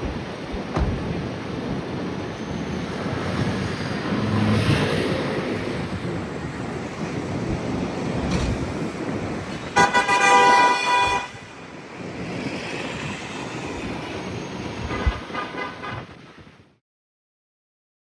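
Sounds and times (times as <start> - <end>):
subway train rumble: 0.0 - 16.7
thump: 0.7 - 1.0
train horn blast: 9.7 - 11.6.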